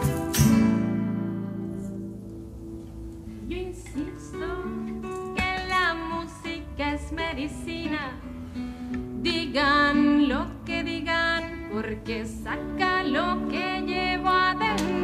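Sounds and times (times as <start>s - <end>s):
strummed acoustic guitar: 0.0s - 15.0s
person singing: 9.2s - 15.0s.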